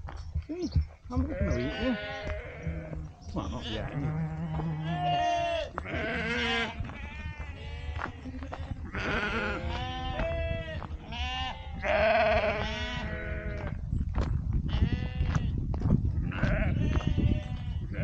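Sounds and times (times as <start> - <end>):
wind rumble on microphone: 0.0 - 18.0
sheep bleating: 1.1 - 13.7, 16.3 - 18.0.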